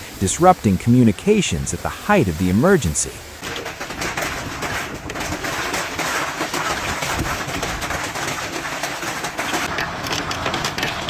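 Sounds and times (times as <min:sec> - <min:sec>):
heavy rain and hail pelting: 0:00.0 - 0:11.0.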